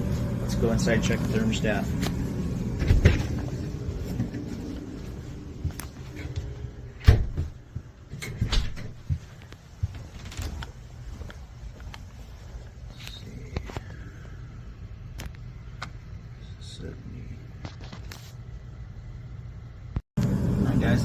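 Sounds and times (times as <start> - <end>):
low hum: 0.0 - 8.9, 18.4 - 21.0.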